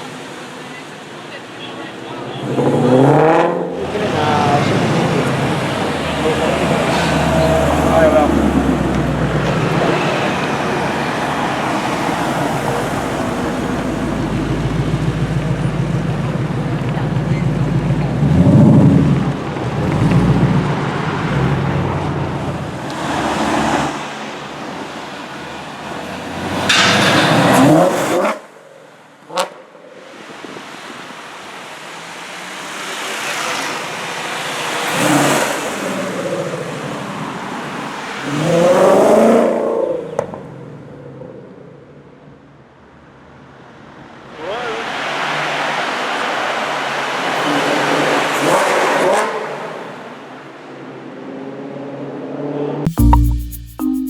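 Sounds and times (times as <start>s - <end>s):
car engine revving: 2.4s - 28.5s.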